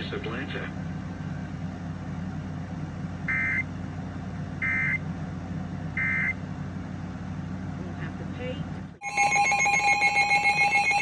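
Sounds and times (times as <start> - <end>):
low hum: 9.0 - 11.0
warbling digital data tones: 9.0 - 11.0.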